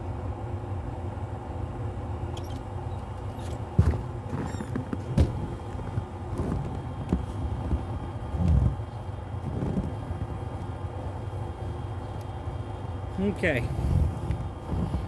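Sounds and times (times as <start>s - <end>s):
steady low rumble: 0.0s - 15.0s
knocks and thumps: 3.4s - 8.8s.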